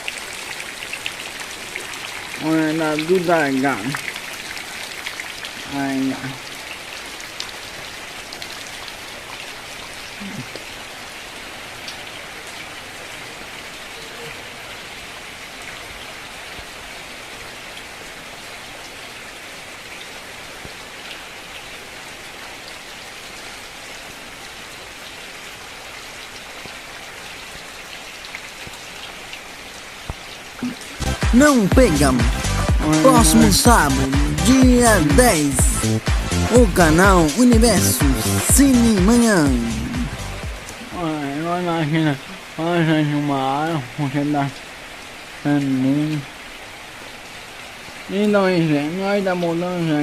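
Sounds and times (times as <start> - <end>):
heavy rain pattering: 0.0 - 50.0.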